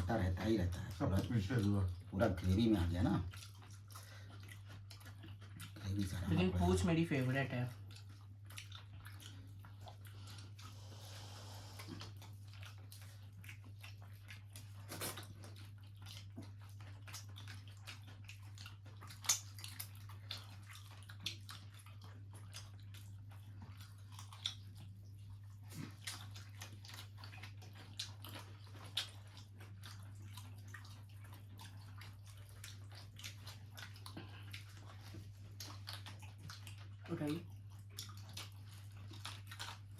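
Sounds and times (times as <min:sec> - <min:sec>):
quiet chewing: 0:00.0 - 0:39.9
fingers picking through wet food: 0:11.6 - 0:39.9.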